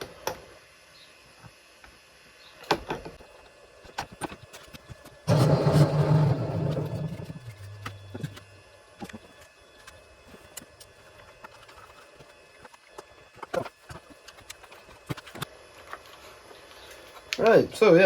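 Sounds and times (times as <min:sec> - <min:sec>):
loud whirring hum: 0:05.3 - 0:13.9.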